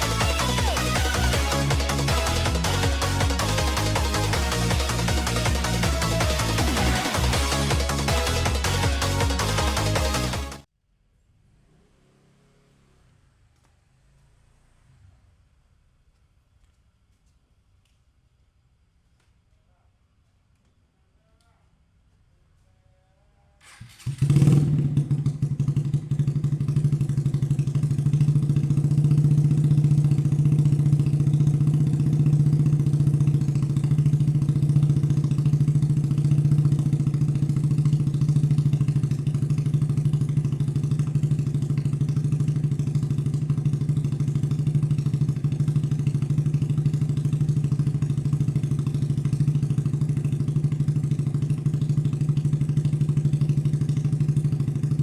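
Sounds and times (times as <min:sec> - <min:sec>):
motorcycle engine idling: 0:00.0 - 0:10.7, 0:23.6 - 0:55.0.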